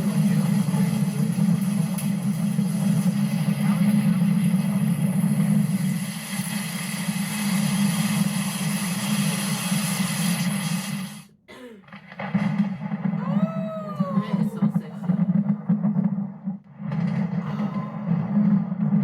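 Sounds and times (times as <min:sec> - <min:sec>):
hail pounding a roof: 0:00.0 - 0:10.9.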